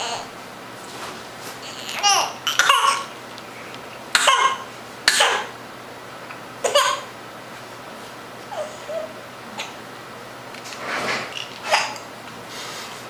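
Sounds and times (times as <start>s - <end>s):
girl coughing: 2.0s - 3.1s, 4.2s - 5.5s, 6.6s - 7.1s.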